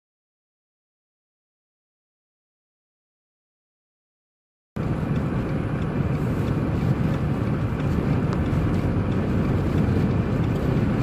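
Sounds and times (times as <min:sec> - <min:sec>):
car road and wind noise: 0:04.8 - 0:11.0.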